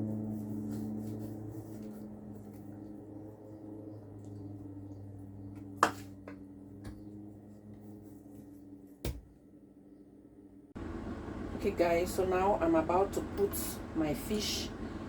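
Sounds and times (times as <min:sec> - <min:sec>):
faint steady hum: 0:06.4 - 0:15.0.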